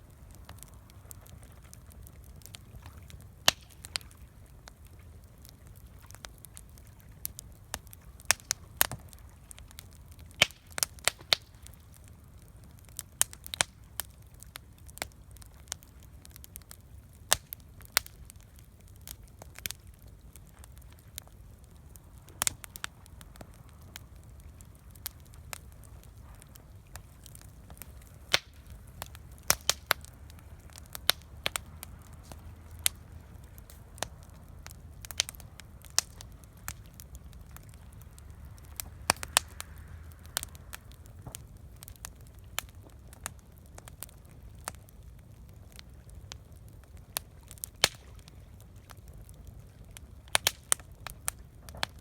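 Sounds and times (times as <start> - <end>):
campfire crackling: 0.0 - 52.0
faint low rumble: 18.2 - 47.6.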